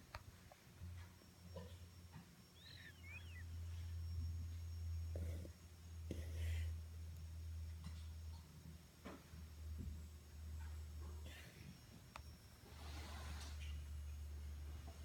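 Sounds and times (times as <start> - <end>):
baby snoring softly: 5.1 - 6.8.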